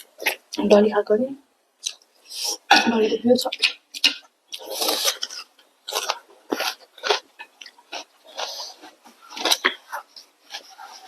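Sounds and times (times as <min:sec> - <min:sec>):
wet chewing and lip-smacking: 0:03.5 - 0:11.0.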